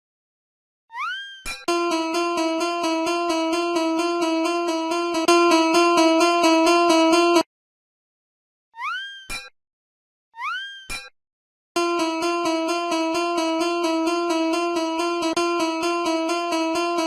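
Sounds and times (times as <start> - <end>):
level crossing warning bell ringing: 1.7 - 7.4, 11.8 - 17.0.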